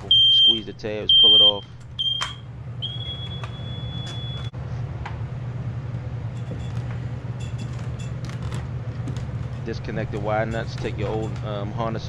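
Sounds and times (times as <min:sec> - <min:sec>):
smoke detector alarm beeping: 0:00.0 - 0:04.5
steady low hum: 0:00.0 - 0:12.0.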